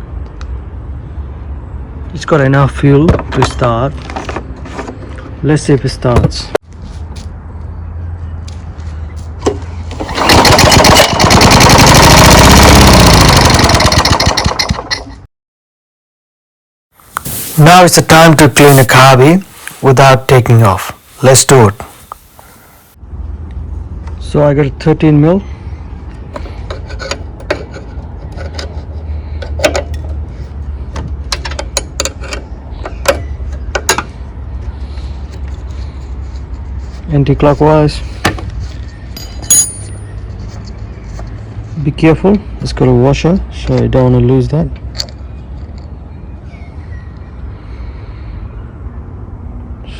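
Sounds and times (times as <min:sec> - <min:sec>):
lawn mower engine running: 0:09.8 - 0:15.2, 0:17.0 - 0:22.9.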